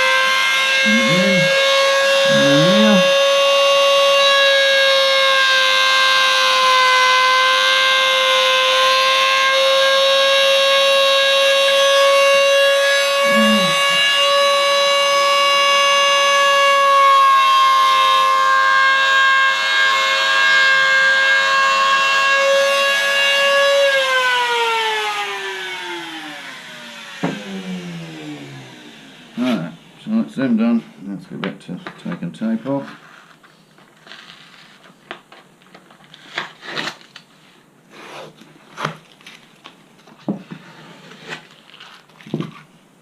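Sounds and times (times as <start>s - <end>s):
rotary tool high whine: 0.0s - 4.6s, 9.8s - 14.6s, 19.6s - 30.2s.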